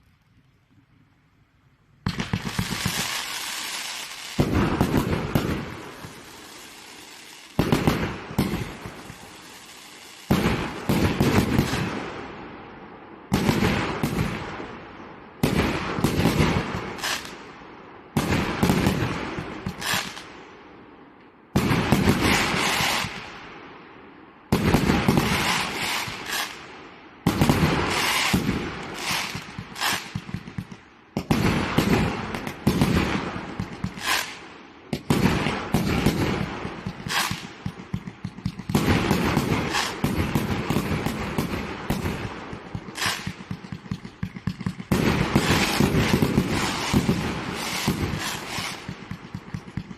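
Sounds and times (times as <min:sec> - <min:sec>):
firework fountain crackling bursts: 0:02.0 - 0:11.9, 0:21.7 - 0:23.2, 0:24.6 - 0:26.6, 0:27.3 - 0:30.4, 0:31.2 - 0:34.4, 0:35.0 - 0:49.9.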